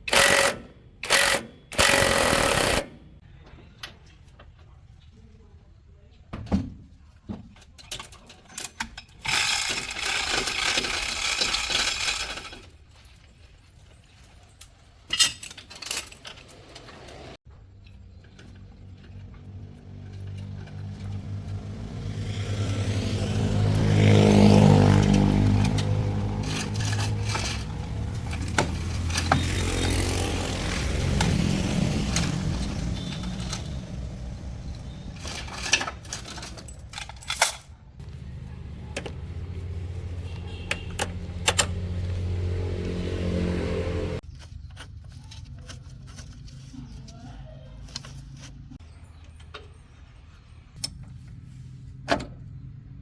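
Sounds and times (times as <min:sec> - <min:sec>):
engine running and revving: 0:19.0 - 0:36.5, 0:38.0 - 0:44.2.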